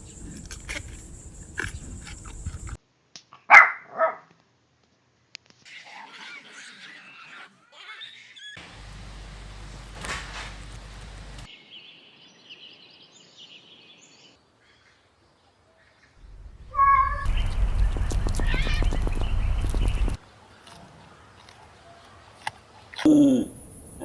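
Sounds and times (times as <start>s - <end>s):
noisy recording: 16.2s - 20.8s.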